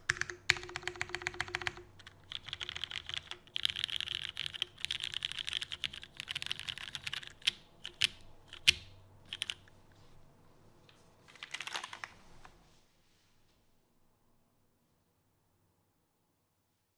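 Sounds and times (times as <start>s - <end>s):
mechanical keyboard typing: 0.0s - 9.7s, 11.3s - 12.2s.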